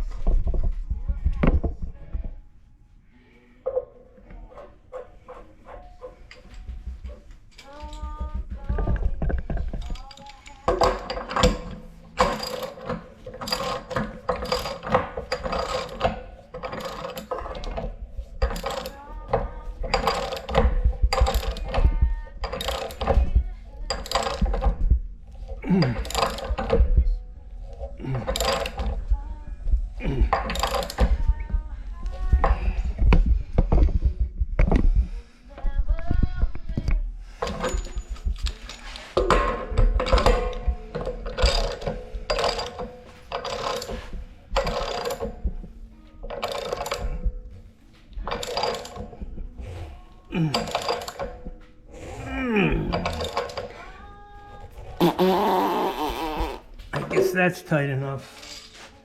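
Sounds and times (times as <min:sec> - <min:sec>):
pipe fitting creaking and grinding: 0:03.6 - 0:58.9
wrench grinding on metal fitting: 0:09.7 - 0:19.0.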